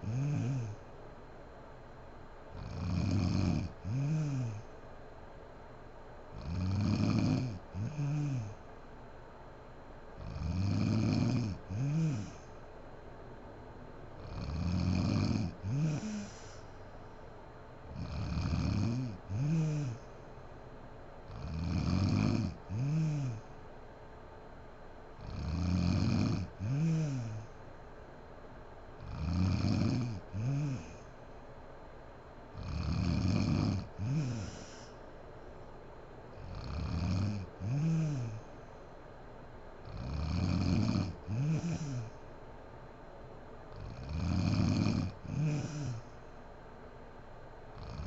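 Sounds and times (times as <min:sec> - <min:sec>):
woman snoring: 0:00.0 - 0:00.8, 0:02.5 - 0:04.7, 0:06.4 - 0:08.6, 0:10.2 - 0:12.5, 0:14.2 - 0:16.7, 0:17.9 - 0:20.1, 0:21.3 - 0:23.5, 0:25.2 - 0:27.6, 0:29.0 - 0:31.1, 0:32.6 - 0:35.0, 0:36.4 - 0:38.5, 0:39.8 - 0:42.2, 0:43.7 - 0:46.2, 0:47.8 - 0:48.0.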